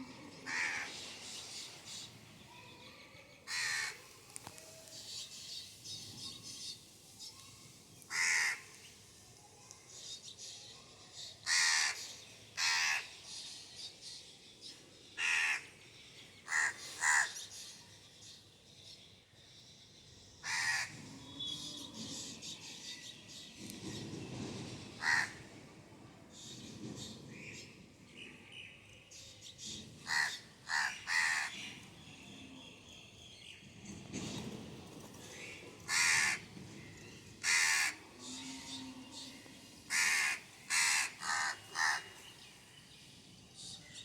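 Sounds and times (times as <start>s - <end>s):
crow cawing: 0.5s - 0.9s, 3.5s - 4.0s, 8.1s - 8.6s, 11.5s - 12.0s, 15.2s - 15.6s, 16.5s - 17.3s, 20.4s - 20.9s, 25.0s - 25.4s, 30.1s - 31.5s, 35.9s - 36.4s, 37.4s - 38.0s, 39.9s - 42.1s.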